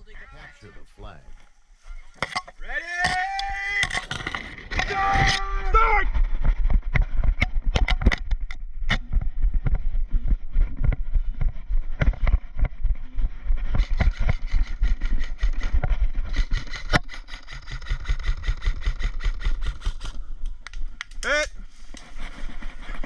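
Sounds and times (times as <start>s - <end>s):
low rumble on microphone: 5.4s - 16.4s
gear knocking and clicking: 13.7s - 20.2s.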